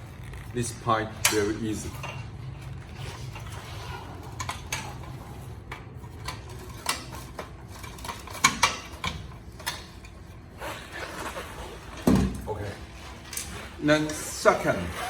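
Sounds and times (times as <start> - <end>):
metal parts clinking: 0.3 - 10.4.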